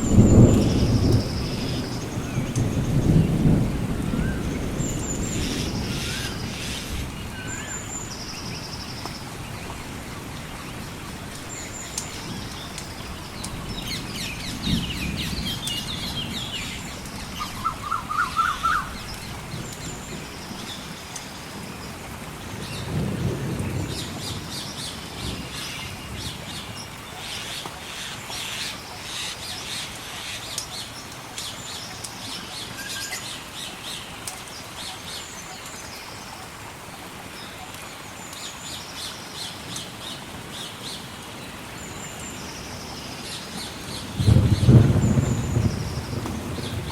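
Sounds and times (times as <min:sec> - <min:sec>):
distant thunder rumbles: 0:00.0 - 0:27.0, 0:43.3 - 0:46.9
rain hissing: 0:00.0 - 0:46.9
birds chirping: 0:04.2 - 0:21.0.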